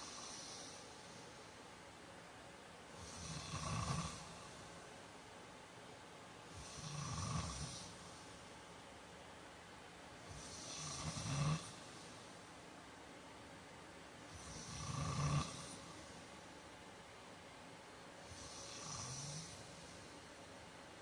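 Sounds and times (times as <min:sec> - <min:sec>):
man snoring: 0:00.0 - 0:00.8, 0:03.0 - 0:04.5, 0:06.6 - 0:08.0, 0:10.3 - 0:11.9, 0:14.3 - 0:15.9, 0:18.3 - 0:19.8.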